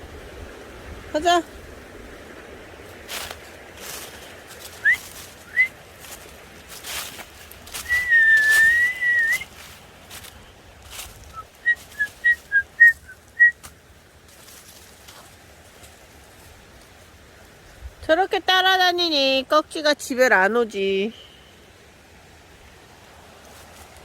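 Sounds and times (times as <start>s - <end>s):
person whistling: 4.8s - 5.7s, 7.8s - 9.5s, 11.3s - 13.6s
faint clicks and rustles: 9.4s - 17.0s.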